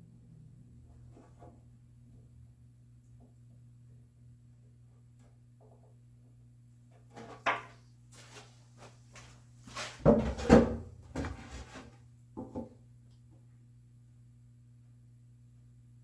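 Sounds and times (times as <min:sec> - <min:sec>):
wood knocking and scraping: 0:09.7 - 0:12.7.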